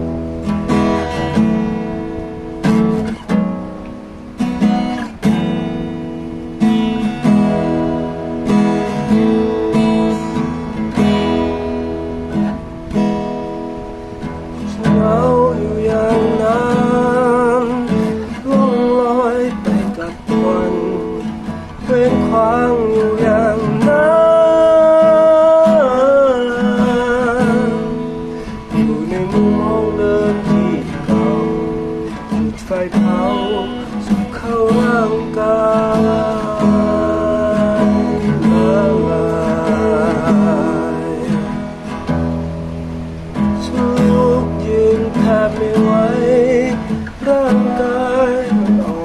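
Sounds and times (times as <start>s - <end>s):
acoustic guitar strumming chords: 0.0s - 49.0s
person singing wavering melody: 14.6s - 41.8s.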